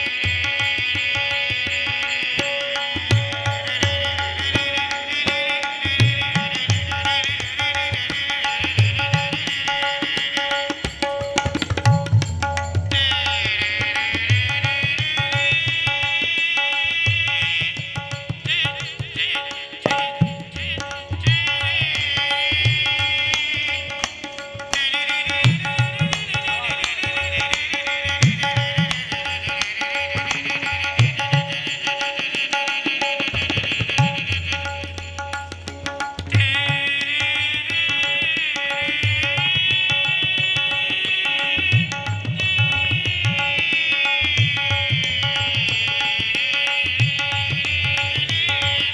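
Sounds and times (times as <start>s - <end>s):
hand drum rhythm: 10.9s - 14.0s, 19.8s - 38.2s.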